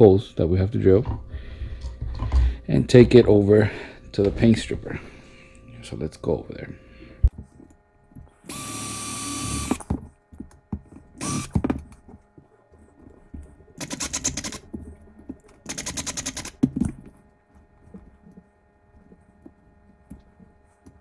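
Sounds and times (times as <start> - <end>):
power drill drilling metal: 8.5 - 9.8, 11.2 - 11.5.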